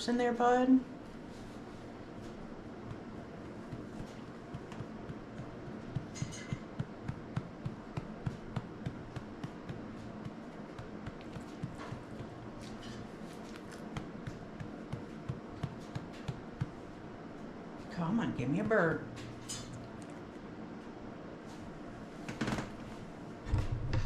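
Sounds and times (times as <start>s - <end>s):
hand patting pet's back: 1.4s - 16.9s.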